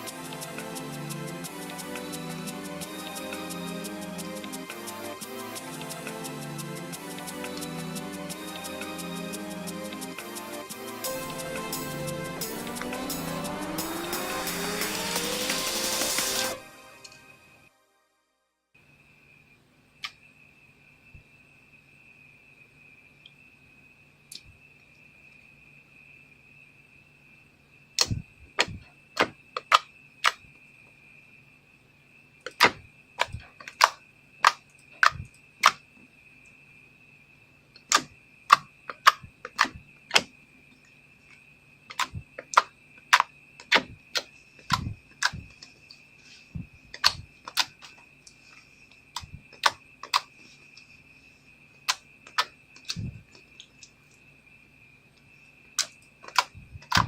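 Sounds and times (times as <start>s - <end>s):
faint steady hum: 18.8s - 57.0s.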